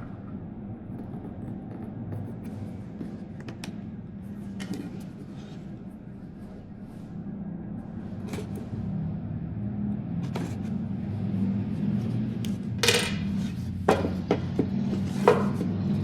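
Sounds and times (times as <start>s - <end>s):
low hum: 0.0s - 16.0s
rustling scrape: 10.2s - 10.8s.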